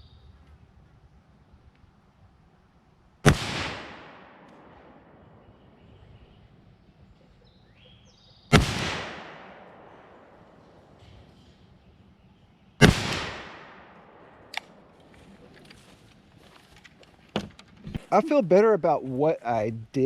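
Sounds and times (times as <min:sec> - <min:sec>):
rifle shots with echo: 0:03.2 - 0:05.8, 0:08.5 - 0:11.0, 0:12.8 - 0:15.0.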